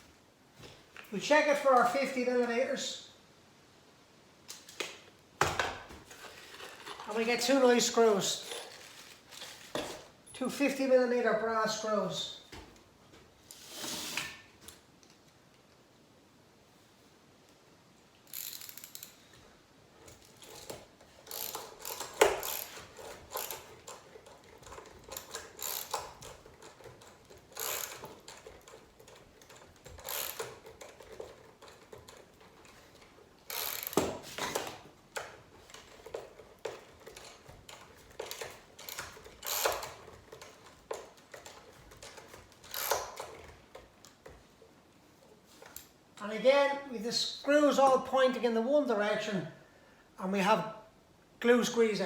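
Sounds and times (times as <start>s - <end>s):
screwdriver driving screws into wood: 20.5s - 43.5s.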